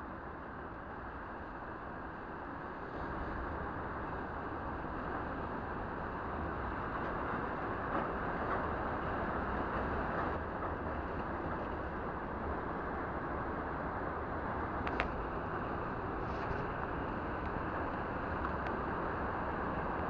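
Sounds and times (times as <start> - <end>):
wind rumbling on microphone: 0.8 - 20.0.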